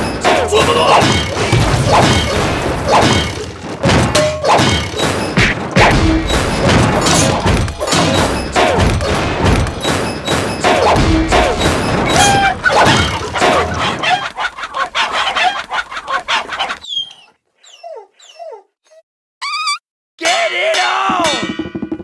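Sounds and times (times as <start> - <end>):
background music: 0.0 - 14.3
crash: 0.0 - 15.4
cartoon thumps and thuds: 0.0 - 16.8.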